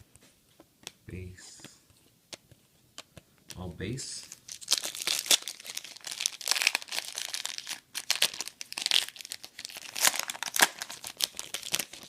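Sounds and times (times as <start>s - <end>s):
wrappers crinkling and tearing: 4.2s - 12.0s.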